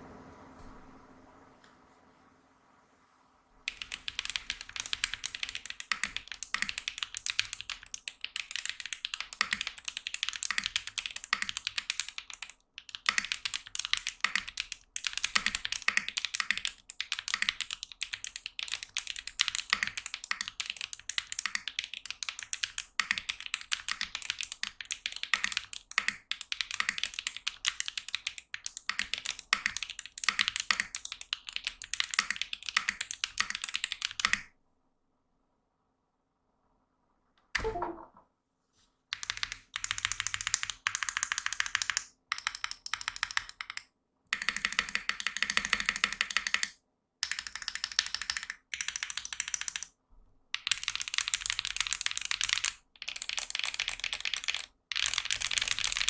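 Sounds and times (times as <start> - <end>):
mechanical keyboard typing: 3.7 - 34.5, 39.1 - 49.9, 50.6 - 56.0.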